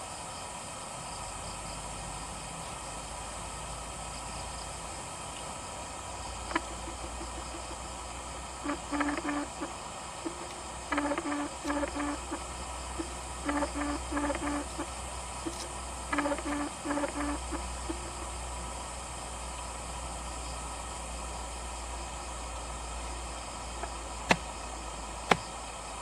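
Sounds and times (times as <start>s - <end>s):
distant machinery drone: 5.8s - 19.4s.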